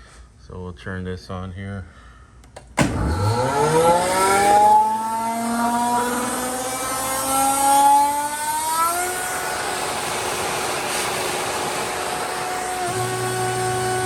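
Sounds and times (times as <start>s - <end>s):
air compressor motor whining: 2.8s - 14.0s.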